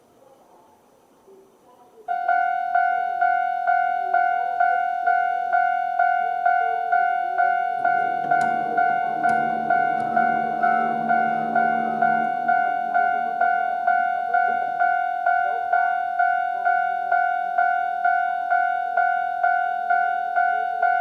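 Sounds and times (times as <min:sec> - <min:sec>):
railway crossing bell ringing: 0:02.1 - 0:21.0
train rumbling: 0:04.8 - 0:13.8
train wheels clicking on rail joints: 0:07.4 - 0:12.6.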